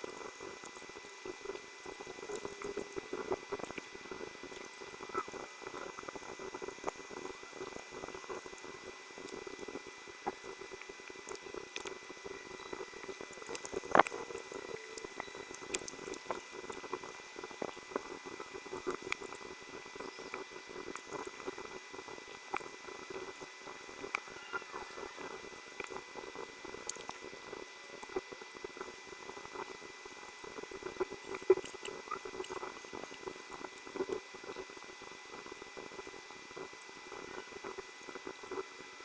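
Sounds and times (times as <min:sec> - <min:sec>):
faint steady hum: 0:00.0 - 0:39.0.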